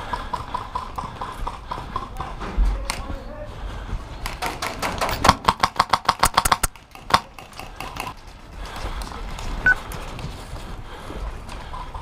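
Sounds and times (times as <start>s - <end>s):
airsoft rifle shots: 4.4s - 7.3s.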